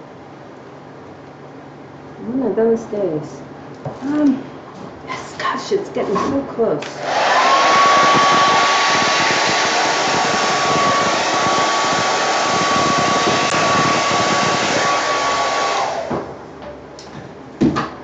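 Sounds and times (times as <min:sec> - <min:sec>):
hair dryer blowing: 0:06.8 - 0:16.4.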